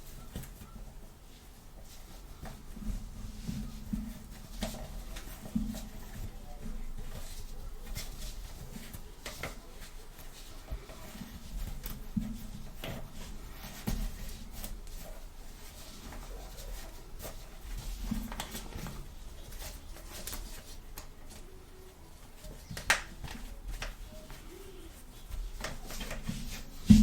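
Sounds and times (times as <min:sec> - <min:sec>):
soft knocks: 0:26.1 - 0:27.0.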